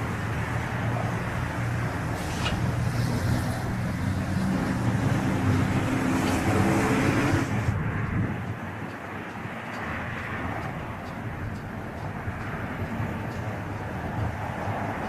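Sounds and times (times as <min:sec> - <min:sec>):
wind rumble: 0:00.0 - 0:15.0.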